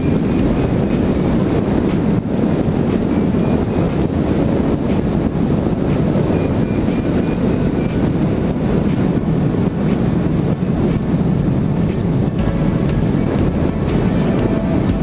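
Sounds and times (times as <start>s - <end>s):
wind buffeting microphone: 0.0s - 15.0s
faint high beeps: 6.0s - 8.2s.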